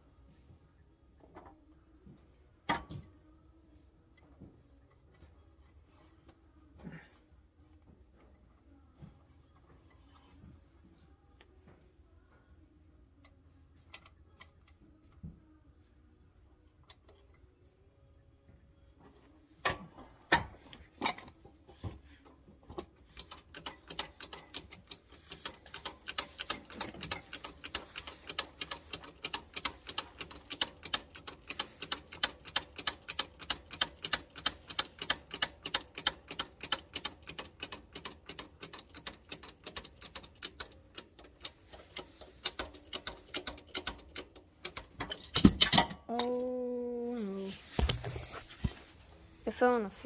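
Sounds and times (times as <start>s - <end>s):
rapid metallic clicking: 23.0s - 45.9s.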